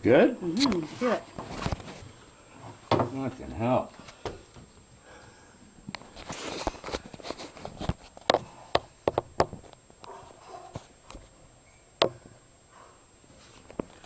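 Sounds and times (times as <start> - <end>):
rustling: 0.6 - 4.8, 6.0 - 8.5.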